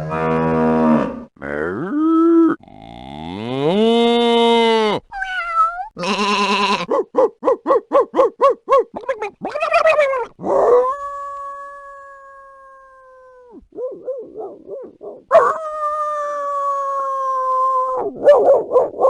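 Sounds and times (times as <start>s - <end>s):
long steady animal cry: 6.0s - 6.9s
harsh animal call: 9.0s - 10.6s.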